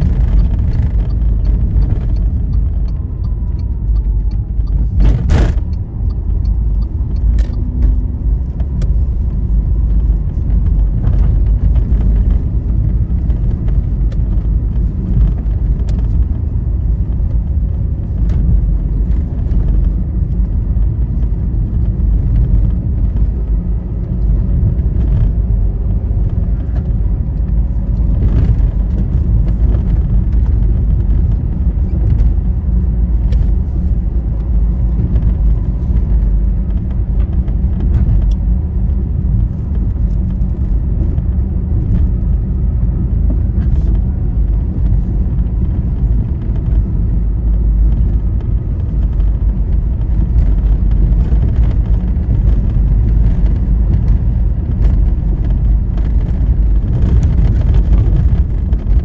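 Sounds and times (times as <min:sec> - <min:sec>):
vehicle road and engine rumble: 0:00.0 - 0:59.0.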